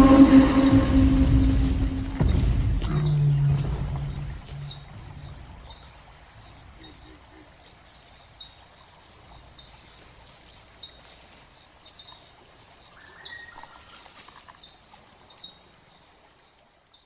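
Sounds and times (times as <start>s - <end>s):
insects chirping: 0.0s - 17.0s
bird-like call: 13.0s - 14.2s.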